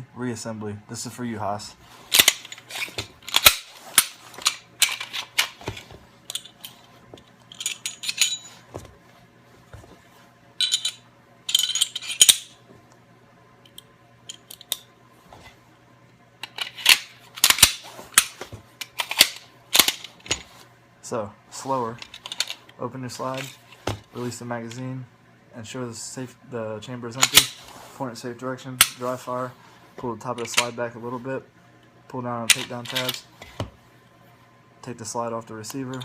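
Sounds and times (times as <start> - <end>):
pistol metallic clicks and rattles: 2.1 - 5.6, 16.4 - 20.1.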